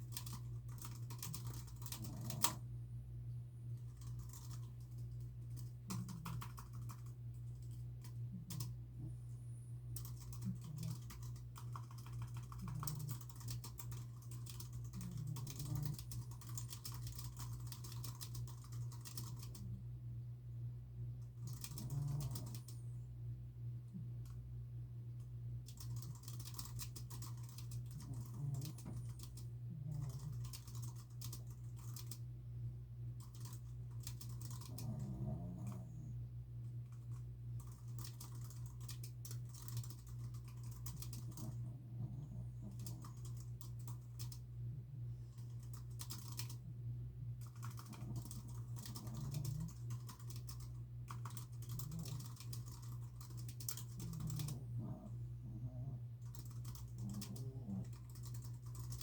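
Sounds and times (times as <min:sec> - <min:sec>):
typing on computer keyboard: 0:00.0 - 0:02.6, 0:03.9 - 0:08.7, 0:10.0 - 0:19.7, 0:21.4 - 0:22.7, 0:25.7 - 0:32.2, 0:33.2 - 0:35.8, 0:36.9 - 0:44.4, 0:45.4 - 0:46.7, 0:47.4 - 0:54.9, 0:56.2 - 0:59.0
dogs snoring faintly: 0:00.0 - 0:02.8, 0:03.7 - 0:20.4, 0:21.2 - 0:24.6, 0:25.6 - 0:32.3, 0:33.2 - 0:59.0
steady low hum: 0:00.0 - 0:59.0.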